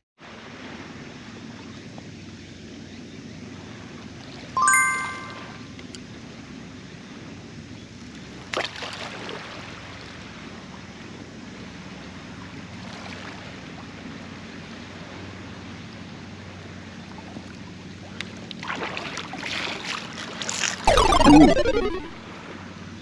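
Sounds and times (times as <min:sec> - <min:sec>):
sharp sudden sound: 0:20.9 - 0:22.2.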